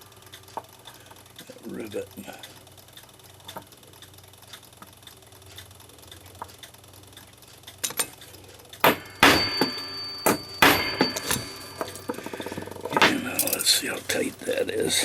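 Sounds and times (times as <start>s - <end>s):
hammer striking metal punch: 8.8s - 13.6s.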